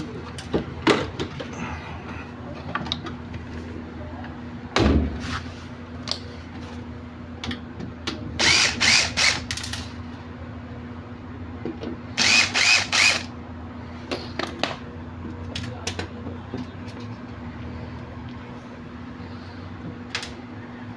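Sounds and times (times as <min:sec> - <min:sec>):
power drill whining: 0:08.4 - 0:09.7, 0:12.2 - 0:13.3.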